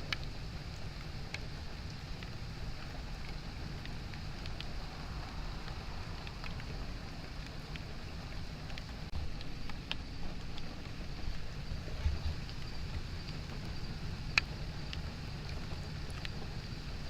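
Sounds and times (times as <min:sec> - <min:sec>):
low rumble: 0:00.0 - 0:17.0
steady rain: 0:00.0 - 0:17.0.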